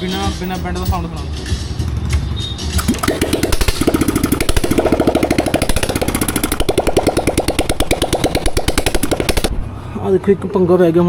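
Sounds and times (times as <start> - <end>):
motorcycle engine exhaust pops: 2.8 - 9.5.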